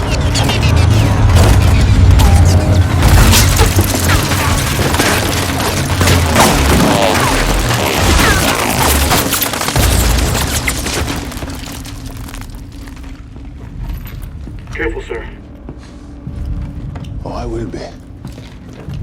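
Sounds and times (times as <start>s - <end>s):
dramatic film score: 0.0s - 19.0s
crashes and impacts: 0.7s - 14.4s.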